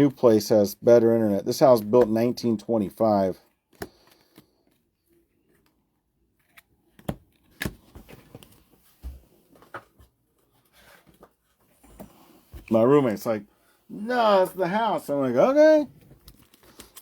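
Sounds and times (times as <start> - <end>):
trading cards clicking and rustling: 3.7 - 4.8, 16.1 - 17.0.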